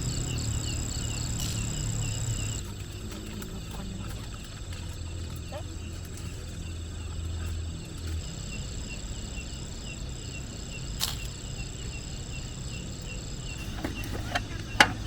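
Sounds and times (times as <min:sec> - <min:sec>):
insects chirping: 0:00.0 - 0:15.0.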